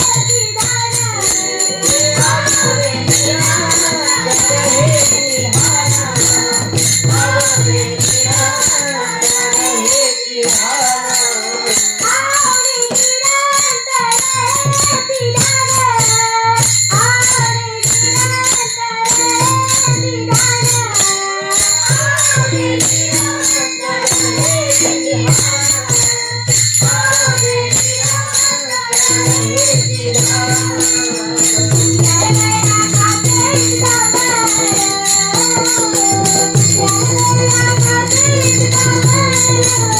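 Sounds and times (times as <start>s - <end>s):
jingling metal percussion: 0.0s - 39.9s
person singing: 0.0s - 39.9s.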